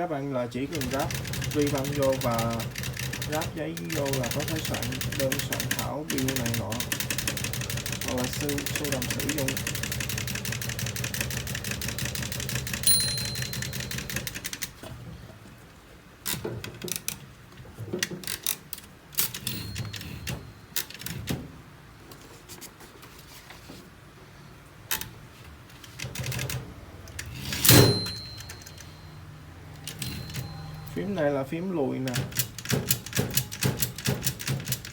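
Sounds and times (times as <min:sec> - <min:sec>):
typewriter key strikes: 0:00.7 - 0:14.7, 0:19.2 - 0:21.4, 0:27.2 - 0:29.0, 0:29.8 - 0:30.6, 0:32.1 - 0:34.9
typewriter bell ding: 0:00.8 - 0:07.2, 0:07.9 - 0:09.6, 0:12.6 - 0:14.6, 0:19.3 - 0:20.6, 0:27.6 - 0:29.2, 0:29.8 - 0:31.2.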